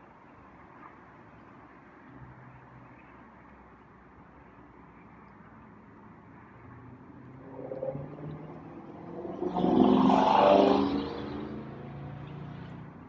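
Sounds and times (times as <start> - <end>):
vehicle driving past: 7.3 - 13.0.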